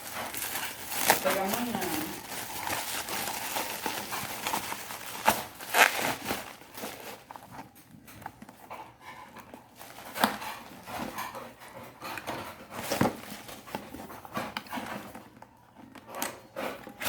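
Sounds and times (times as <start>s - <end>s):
packaging rustling: 0.0s - 8.7s, 9.4s - 11.2s, 12.6s - 15.4s.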